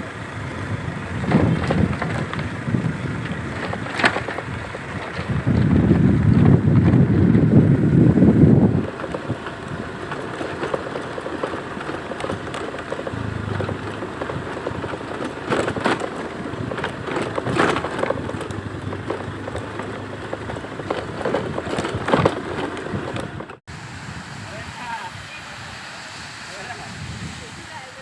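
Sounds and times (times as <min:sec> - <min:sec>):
steady rain falling: 0:23.7 - 0:28.0.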